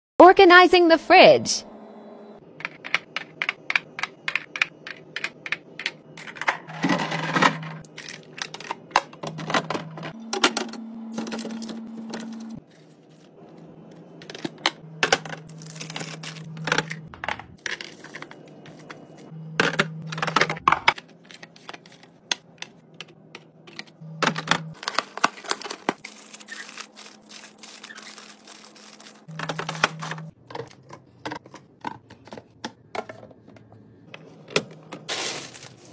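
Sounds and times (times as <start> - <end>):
food containers clattering: 2.6 - 12.5, 14.2 - 35.9
low steady hum: 5.4 - 25.0.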